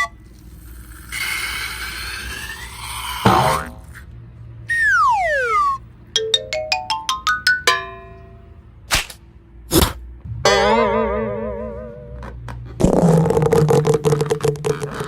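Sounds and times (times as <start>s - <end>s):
falling whistle glide: 4.7s - 5.8s
rising xylophone-like notes: 6.2s - 8.5s.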